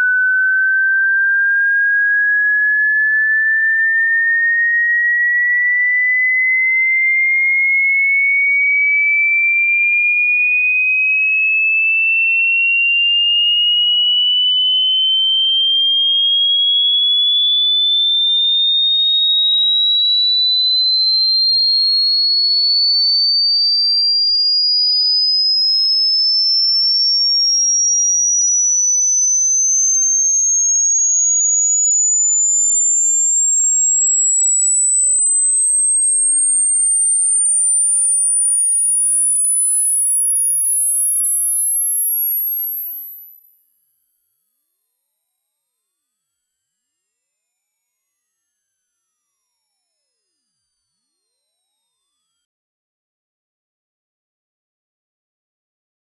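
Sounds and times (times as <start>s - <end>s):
rising electronic tone: 35.5s - 41.4s, 42.5s - 51.3s.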